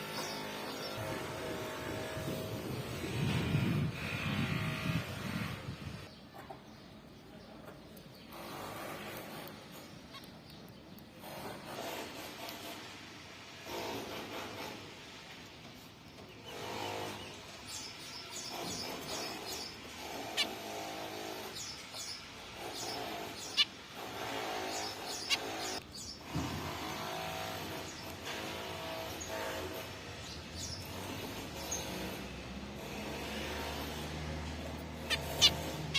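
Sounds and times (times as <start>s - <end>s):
finches buzzy calls: 16.4s - 26.3s, 34.7s - 35.9s.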